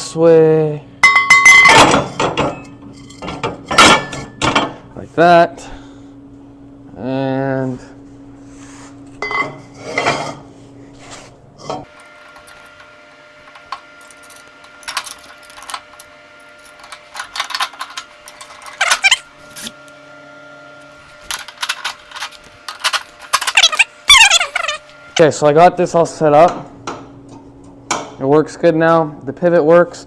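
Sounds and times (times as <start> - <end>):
metal parts clinking and clanking: 11.8 - 19.9, 20.8 - 25.3.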